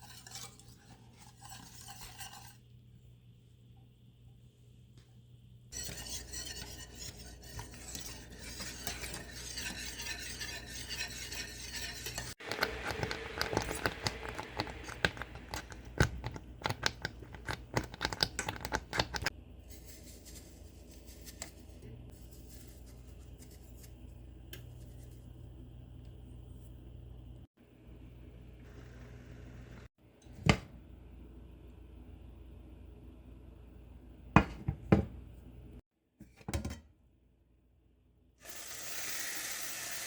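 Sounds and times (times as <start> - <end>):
metal utensil scraping a pot: 0.0 - 2.7, 5.7 - 15.8.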